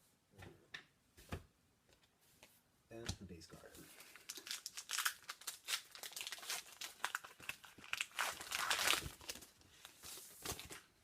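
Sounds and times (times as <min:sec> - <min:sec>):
wrapper crinkling and tearing: 0:04.0 - 0:09.6.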